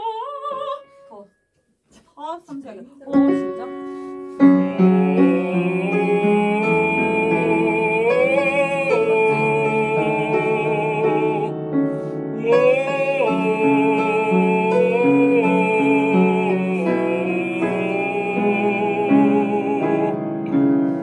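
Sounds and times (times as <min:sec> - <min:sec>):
classical voice singing: 0:00.0 - 0:01.2, 0:02.2 - 0:21.0
piano accompaniment: 0:03.0 - 0:21.0.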